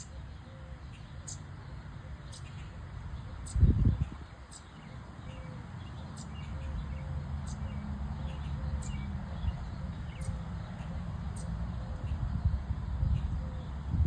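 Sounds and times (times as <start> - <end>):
small bird chirping: 2.3 - 11.5.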